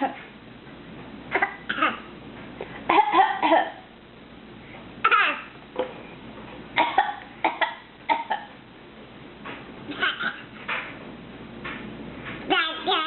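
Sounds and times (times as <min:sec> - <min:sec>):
child coughing playfully: 0:01.3 - 0:02.1, 0:02.9 - 0:03.8, 0:05.0 - 0:05.4, 0:06.8 - 0:08.5, 0:09.9 - 0:10.5.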